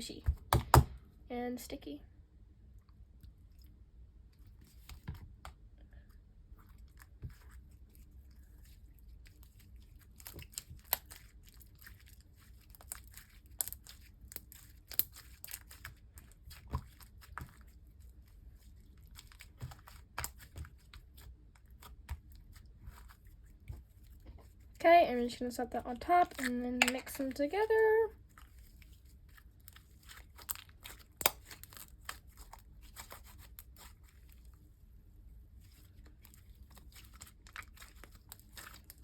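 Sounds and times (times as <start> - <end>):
sticky slime squishing and popping: 9.0 - 24.6, 25.9 - 27.6, 28.3 - 34.4, 35.9 - 39.0.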